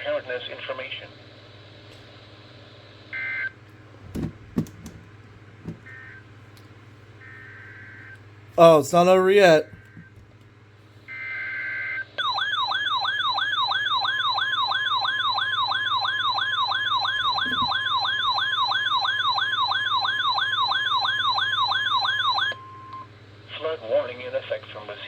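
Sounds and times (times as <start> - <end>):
warbling siren-like alert tone: 12.2 - 22.6.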